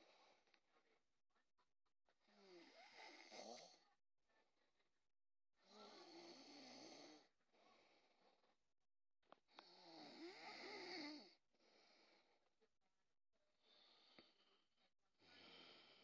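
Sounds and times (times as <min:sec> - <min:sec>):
person snoring: 0:02.4 - 0:03.8, 0:05.6 - 0:07.3, 0:09.6 - 0:12.0
soft breathing: 0:11.6 - 0:12.5, 0:13.6 - 0:16.0.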